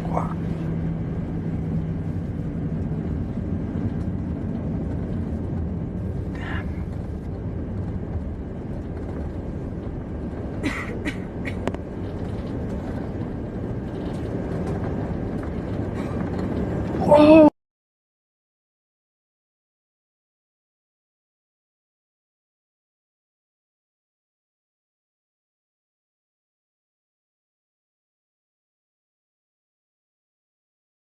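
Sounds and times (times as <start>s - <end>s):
low hum: 0.0s - 17.5s
vehicle engine rumbling: 0.0s - 17.5s.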